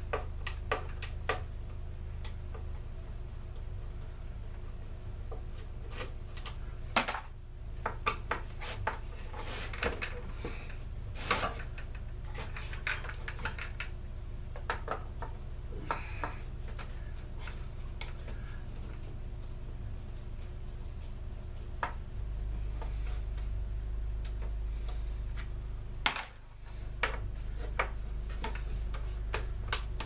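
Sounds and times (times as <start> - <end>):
tools scraping: 8.3 - 13.9.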